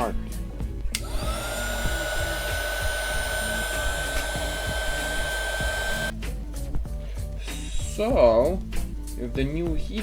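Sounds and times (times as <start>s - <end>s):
heat gun motor whine: 1.0s - 6.1s
rush of blowing air: 1.0s - 6.1s.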